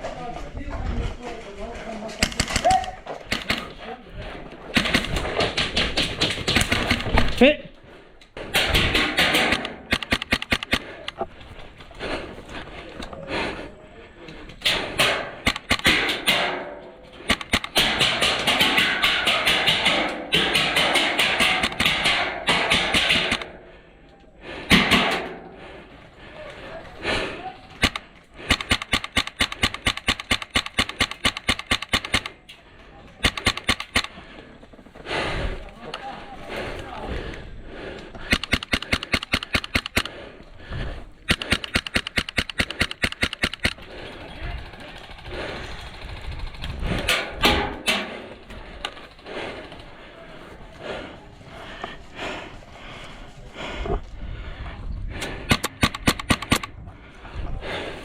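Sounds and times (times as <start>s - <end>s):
rustles knocks and clicks: 0.0s - 7.4s
airsoft gun firing: 2.2s - 3.8s, 4.7s - 7.3s, 8.5s - 11.1s, 14.6s - 23.5s, 27.8s - 32.4s, 33.2s - 34.2s, 38.3s - 40.2s, 41.3s - 45.3s, 55.5s - 56.7s.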